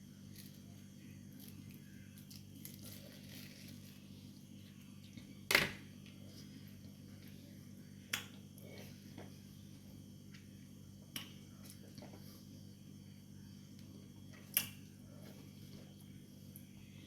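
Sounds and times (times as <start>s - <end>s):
steady low hum: 0.0s - 17.0s
faint rustling and handling: 0.2s - 5.2s.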